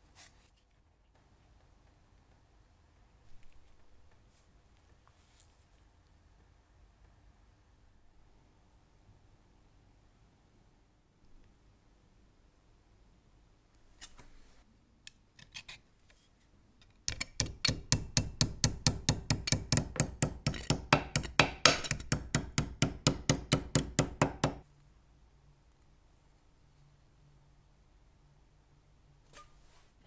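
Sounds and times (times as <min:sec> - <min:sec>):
hand tool clicking on metal: 0:17.1 - 0:24.6.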